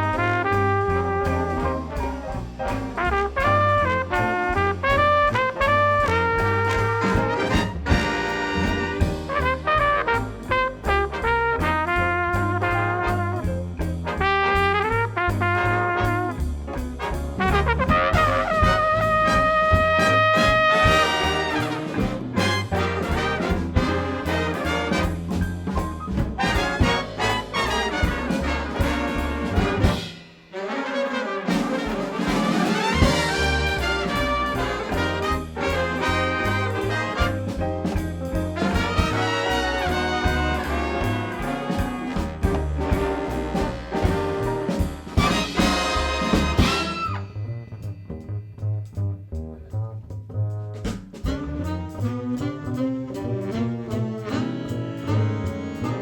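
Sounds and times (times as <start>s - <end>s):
rhythm section pulse: 0.0s - 13.4s, 17.2s - 30.3s, 31.4s - 47.2s
trumpet and trombone sections: 0.0s - 47.6s, 51.2s - 56.0s.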